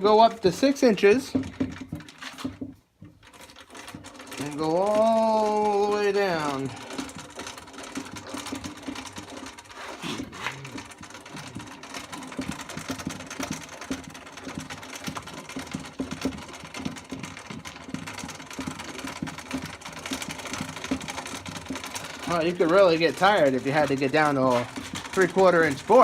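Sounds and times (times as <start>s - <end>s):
hand crank clicking and rattling: 0.0s - 26.0s.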